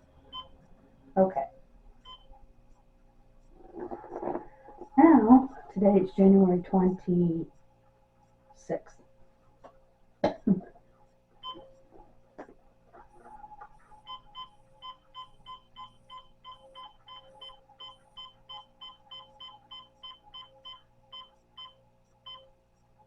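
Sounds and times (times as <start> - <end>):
digital clock short high beeps: 14.1 - 22.5.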